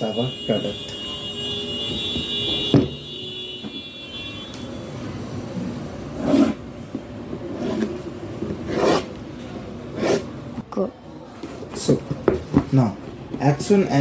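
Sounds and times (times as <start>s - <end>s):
cardboard sliding against cardboard: 6.1s - 6.6s, 7.4s - 9.1s.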